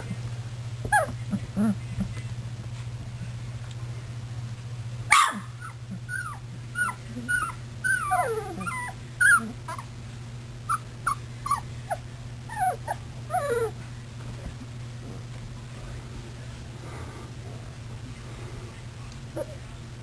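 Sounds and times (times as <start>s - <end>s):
steady low hum: 0.0s - 20.0s
puppies whimpering and yipping: 5.6s - 9.9s, 10.7s - 13.8s.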